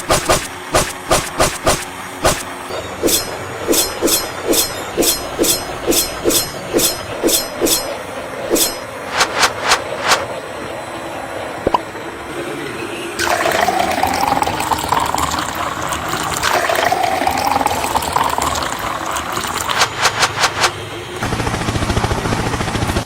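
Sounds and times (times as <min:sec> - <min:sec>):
fast low pulsing: 0:00.0 - 0:10.3, 0:19.7 - 0:20.8
sharp clicks: 0:00.0 - 0:10.3
rushing water: 0:13.2 - 0:20.7.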